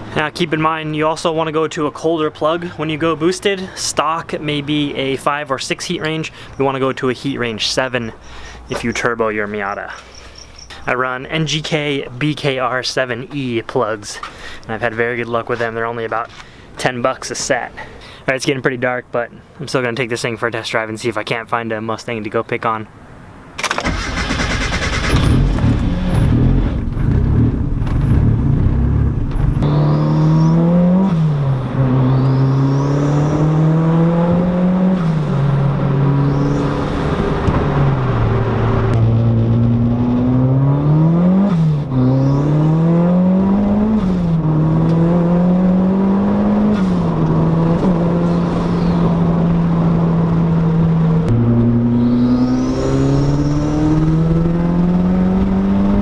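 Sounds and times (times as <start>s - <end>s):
car engine accelerating: 23.6s - 56.0s.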